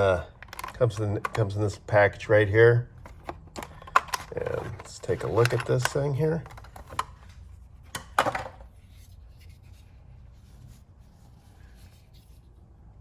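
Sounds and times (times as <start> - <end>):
packaging crackling and rustling: 3.1 - 7.4.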